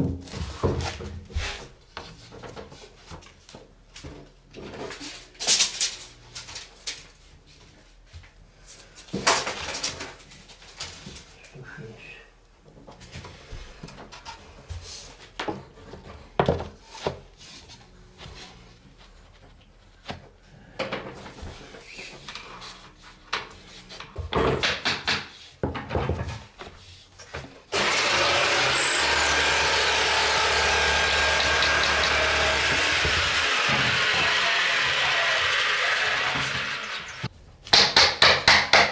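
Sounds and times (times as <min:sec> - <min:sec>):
knocks and clicks of boards: 0:24.2 - 0:26.4, 0:37.7 - 0:38.9
power saw cutting laminate: 0:27.7 - 0:37.3.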